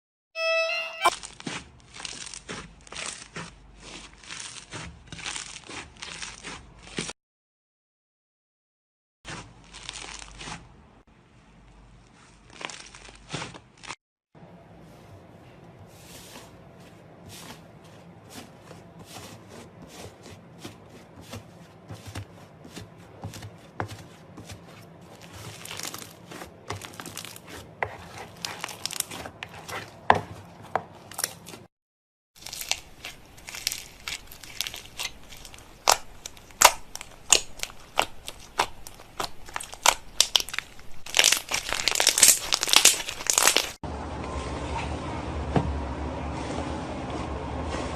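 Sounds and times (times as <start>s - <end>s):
slime squelching and crackling: 1.0s - 7.1s, 9.3s - 10.8s, 11.8s - 14.0s, 16.1s - 31.7s, 32.4s - 43.8s.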